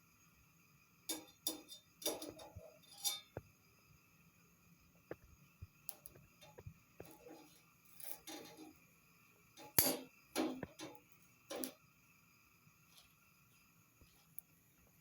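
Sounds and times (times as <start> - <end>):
kitchenware clinking: 1.1 - 3.4, 9.6 - 11.8.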